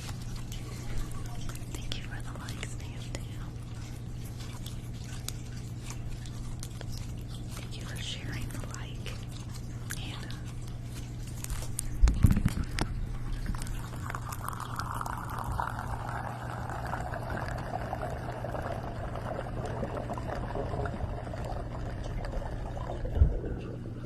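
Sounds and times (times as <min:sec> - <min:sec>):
liquid pouring into a container: 0:09.5 - 0:24.0.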